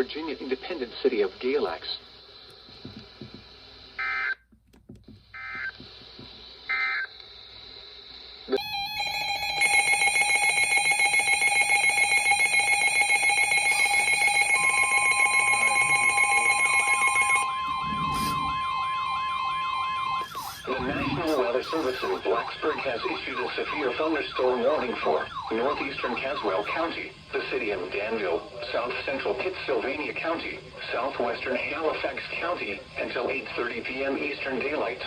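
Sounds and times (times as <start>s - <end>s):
digital data bursts: 8.5s - 28.2s
rapidly pulsing electronic alert tone: 8.6s - 26.9s
steady beep: 8.6s - 26.9s
warbling siren-like tone: 8.6s - 26.9s.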